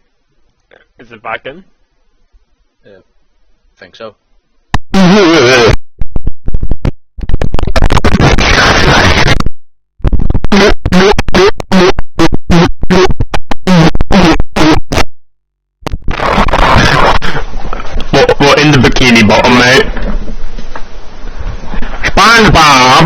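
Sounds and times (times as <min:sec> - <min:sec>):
record-scratch-like sounds: 0:04.7 - 0:15.1, 0:15.8 - 0:23.0
loud distorted meme audio: 0:04.8 - 0:05.8, 0:06.5 - 0:15.1, 0:15.9 - 0:20.0, 0:21.8 - 0:23.0.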